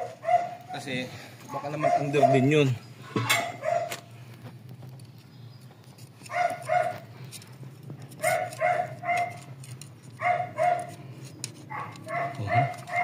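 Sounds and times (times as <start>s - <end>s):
dog barking: 0.0s - 0.9s, 1.7s - 2.7s, 3.4s - 4.0s, 6.3s - 7.0s, 8.2s - 9.5s, 10.2s - 10.9s, 11.7s - 13.0s.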